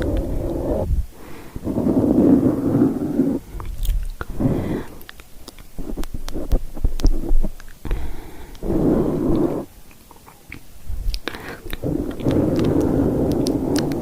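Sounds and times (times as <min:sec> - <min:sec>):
rubbing on microphone: 0:01.6 - 0:04.6, 0:05.6 - 0:07.6
wet mouth clicks and pops: 0:03.6 - 0:04.3, 0:05.0 - 0:08.7, 0:09.3 - 0:14.0.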